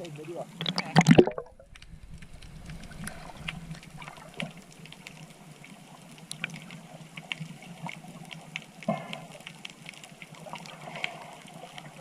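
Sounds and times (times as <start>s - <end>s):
water sloshing and splashing: 0.6s - 12.0s.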